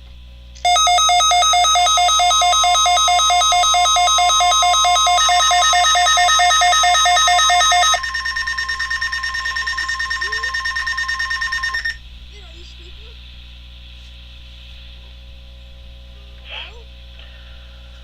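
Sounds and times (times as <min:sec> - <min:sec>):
rapid alarm beeping: 0:00.6 - 0:12.0
steady warning alarm tone: 0:00.6 - 0:12.0.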